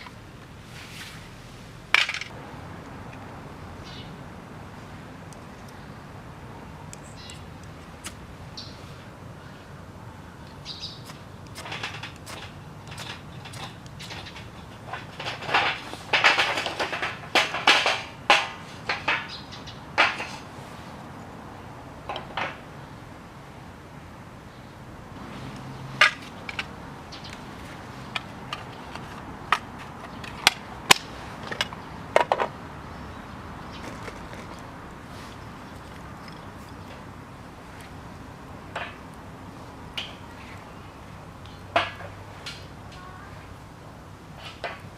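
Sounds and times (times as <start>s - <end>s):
small birds chirping: 3.8s - 4.2s, 5.3s - 11.6s, 19.2s - 20.0s, 25.5s - 30.4s, 31.6s - 38.3s.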